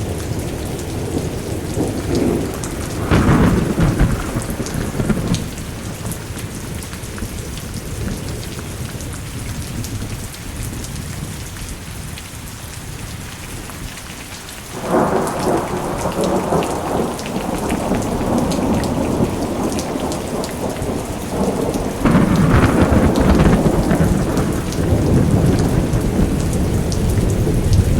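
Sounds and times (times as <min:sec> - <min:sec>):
thunder rolling: 0:00.0 - 0:08.4, 0:14.7 - 0:27.9
steady rain: 0:00.0 - 0:27.9.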